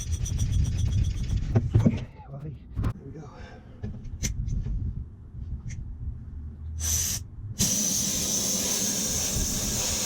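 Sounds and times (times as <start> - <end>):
pressure sprayer hissing: 7.6 - 10.0.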